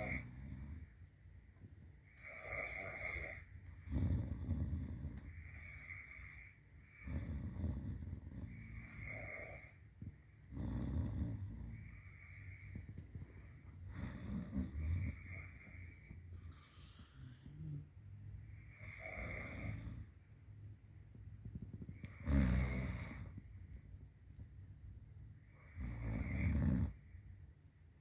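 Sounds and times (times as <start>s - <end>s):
people snoring: 0.0s - 0.9s, 2.1s - 20.2s, 21.8s - 23.4s, 25.5s - 27.0s.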